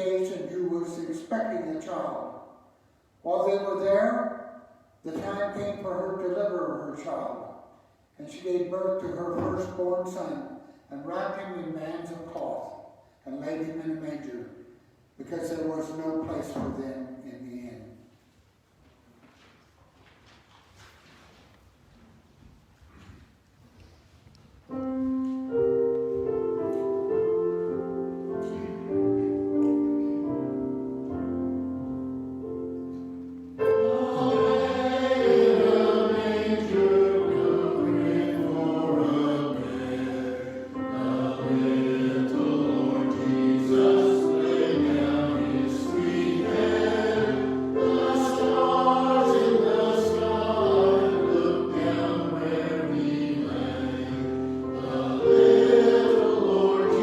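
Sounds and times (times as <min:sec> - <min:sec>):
held instrumental chords: 0:24.7 - 0:57.0
choir singing: 0:33.6 - 0:57.0.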